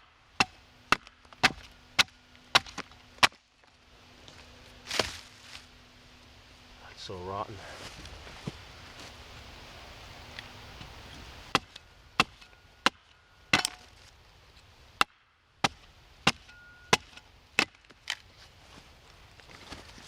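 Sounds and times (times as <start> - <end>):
axe chopping wood: 0.4 - 3.4, 4.9 - 5.2, 11.5 - 14.0, 15.0 - 18.0.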